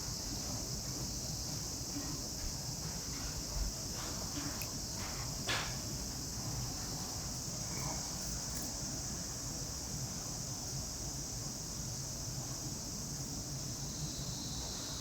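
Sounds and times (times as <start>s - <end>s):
insect chorus shrilling: 6.7s - 9.4s.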